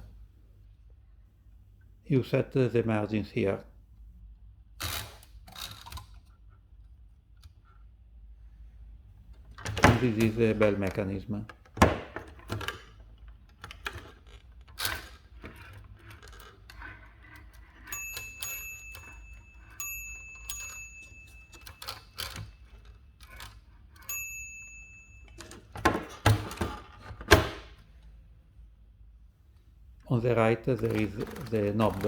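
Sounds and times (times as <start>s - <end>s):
typewriter bell ringing: 17.6s - 27.0s, 30.8s - 32.0s
typewriter mechanism clacking: 30.7s - 32.0s.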